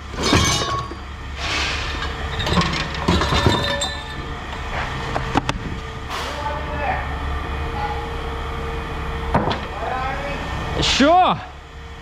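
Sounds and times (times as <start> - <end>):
scrap metal clattering: 0.0 - 5.5
low engine rumble: 0.0 - 11.0.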